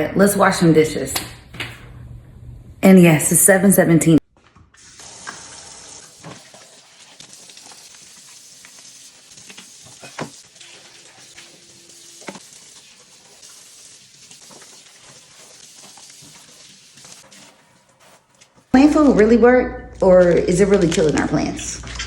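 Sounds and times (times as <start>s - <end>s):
running water and scrubbing: 4.5s - 19.2s.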